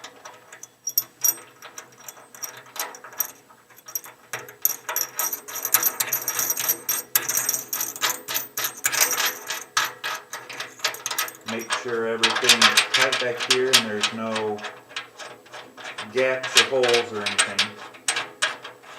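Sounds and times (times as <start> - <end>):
metal clinking: 0.2 - 13.2.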